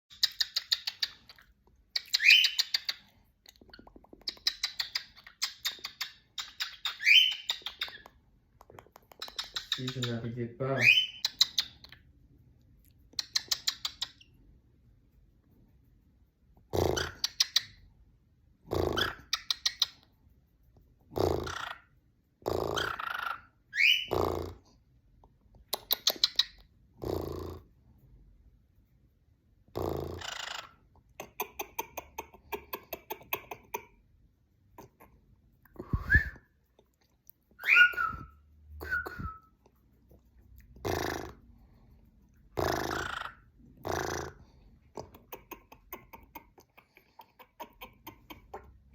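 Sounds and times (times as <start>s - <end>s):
bird whistled chirps: 35.8s - 36.4s, 37.6s - 39.5s.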